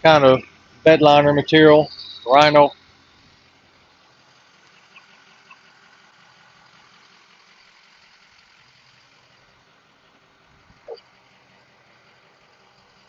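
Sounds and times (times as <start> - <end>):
diesel engine idling: 0.0 - 13.0.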